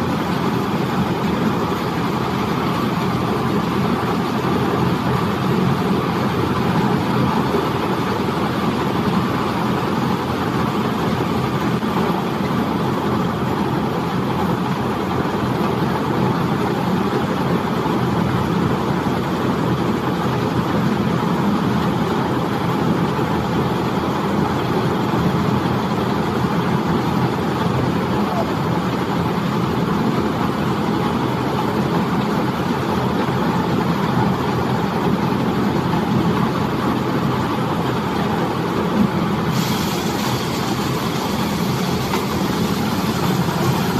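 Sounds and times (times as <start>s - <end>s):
baler machine mechanical drone: 0.0s - 43.9s.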